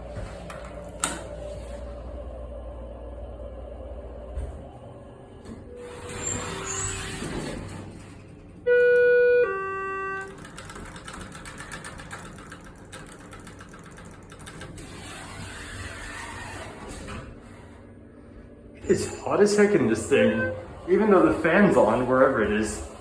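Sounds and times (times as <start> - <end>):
elevator chime ding-dong: 8.6 - 10.8, 18.9 - 21.1.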